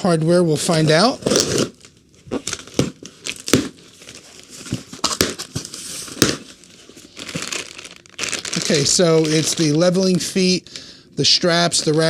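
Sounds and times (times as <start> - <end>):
packaging crinkling and rustling: 0.7 - 10.4, 11.5 - 12.0.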